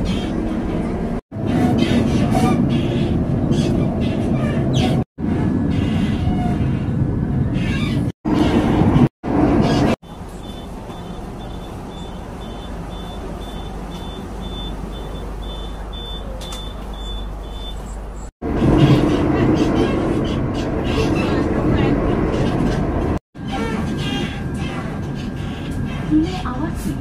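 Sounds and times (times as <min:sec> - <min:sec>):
high electronic beeps: 0:10.4 - 0:17.9.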